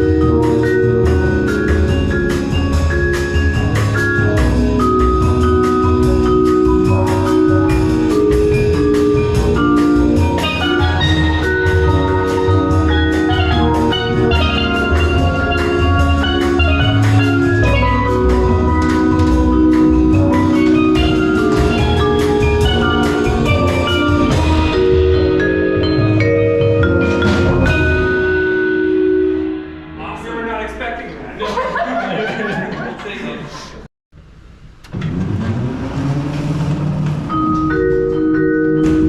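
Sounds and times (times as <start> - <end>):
mallet percussion melody: 0.0 - 30.2, 37.1 - 39.0
steady beat: 0.0 - 31.1.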